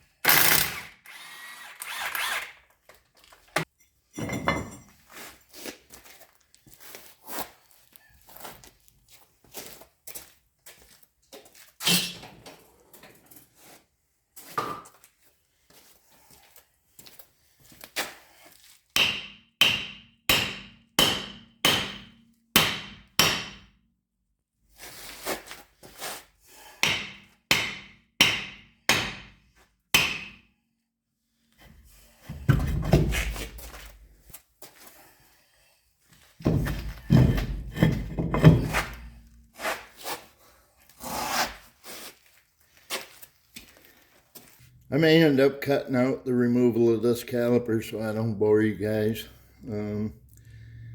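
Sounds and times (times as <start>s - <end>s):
metal-on-metal work: 3.6s - 5.0s, 36.5s - 39.1s
hammer striking steel: 19.0s - 23.7s, 26.8s - 29.3s, 30.0s - 30.4s.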